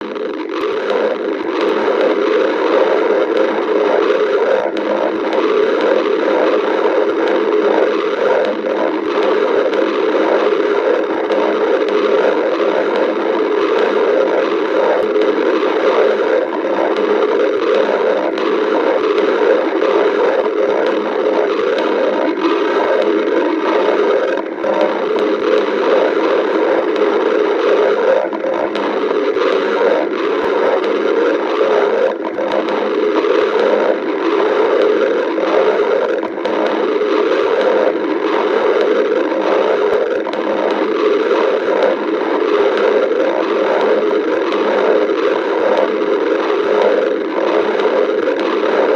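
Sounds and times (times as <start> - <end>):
faint clicks: 0.0 - 48.9
stomach growling: 0.0 - 48.9.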